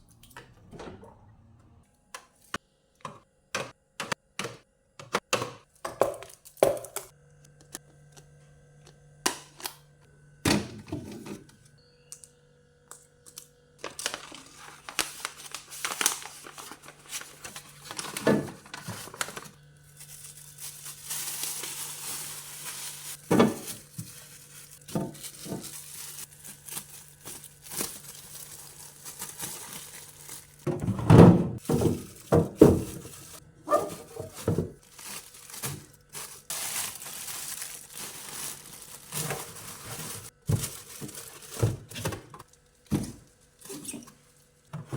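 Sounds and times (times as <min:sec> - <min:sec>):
plastic packaging crinkling: 0:13.3 - 0:30.8, 0:31.6 - 0:44.7.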